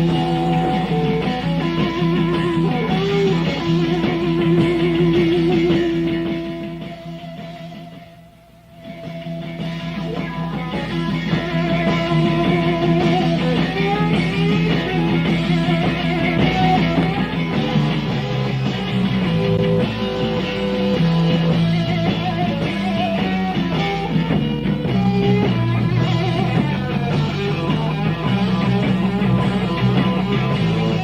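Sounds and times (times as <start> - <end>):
bass: 0.0 - 31.0
drums: 0.0 - 31.0
electric guitar: 0.0 - 31.0.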